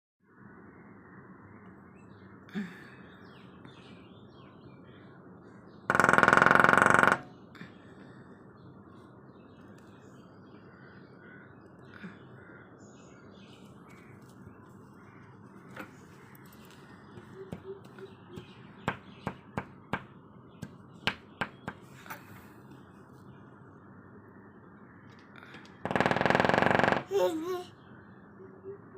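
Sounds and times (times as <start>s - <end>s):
birds chirping: 0.8s - 6.4s, 7.3s - 26.3s
woodpecker drumming: 5.9s - 7.3s, 16.7s - 22.0s.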